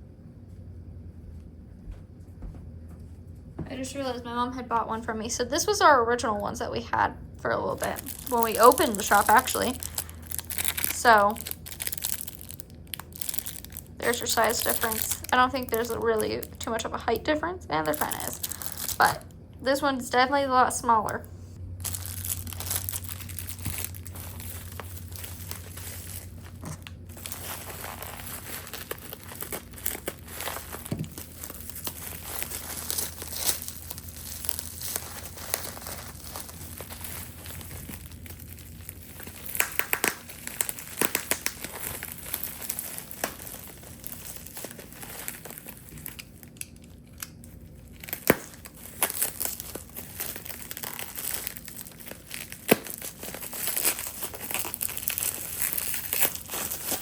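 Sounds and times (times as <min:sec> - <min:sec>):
packing material crinkling: 0:07.6 - 0:17.1, 0:17.8 - 0:19.2, 0:21.8 - 0:57.0.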